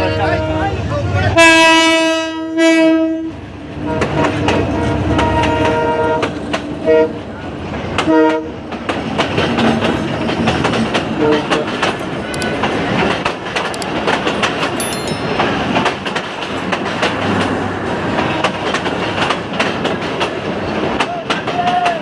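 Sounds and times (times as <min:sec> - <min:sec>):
train horn toot: 0:00.0 - 0:07.3, 0:08.0 - 0:08.6, 0:11.2 - 0:11.8
passenger train rumbling: 0:00.0 - 0:22.0
wheels clacking over rail joints: 0:07.6 - 0:22.0.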